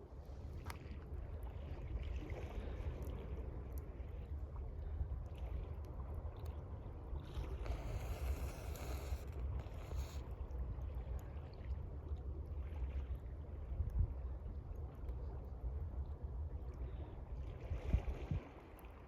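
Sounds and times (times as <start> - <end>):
water lapping: 7.1 - 10.4.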